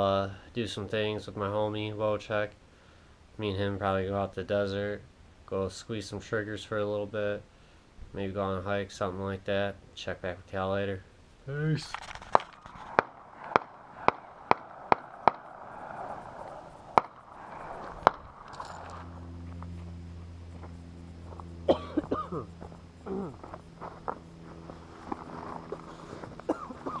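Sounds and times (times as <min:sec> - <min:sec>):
steady low hum: 0:00.0 - 0:27.0
gunshots: 0:12.3 - 0:18.9.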